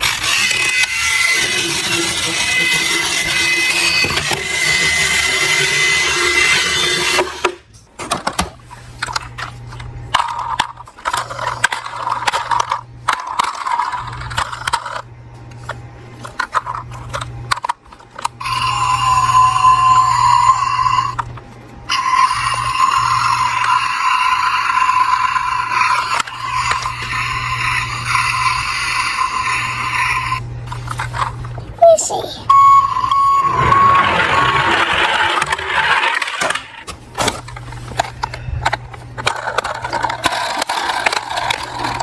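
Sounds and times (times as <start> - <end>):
clicks and scrapes of toy parts: 0.0 - 5.6, 8.1 - 15.0, 15.6 - 18.7, 33.5 - 42.0.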